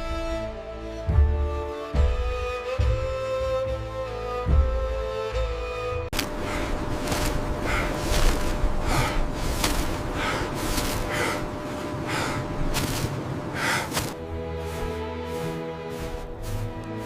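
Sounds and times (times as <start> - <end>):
person breathing hard: 6.2 - 15.4.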